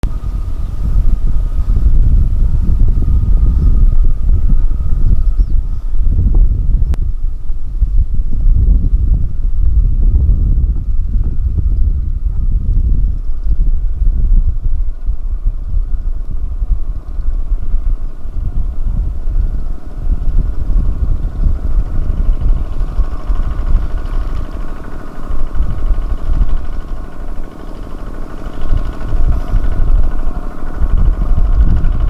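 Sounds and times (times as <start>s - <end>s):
tractor engine running: 0.0s - 32.0s.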